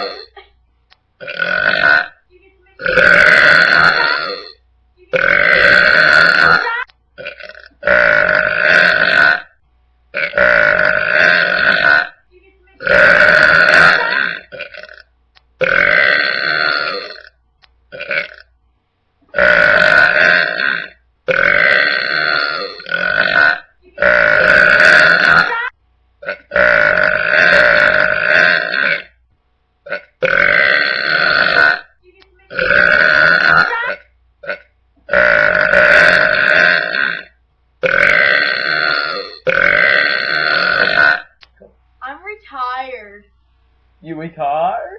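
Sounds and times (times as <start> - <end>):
person burping loudly: 0.0 - 0.4, 1.2 - 2.2, 2.8 - 9.6, 10.2 - 12.2, 12.8 - 18.5, 19.3 - 29.2, 29.9 - 31.9, 32.5 - 41.4.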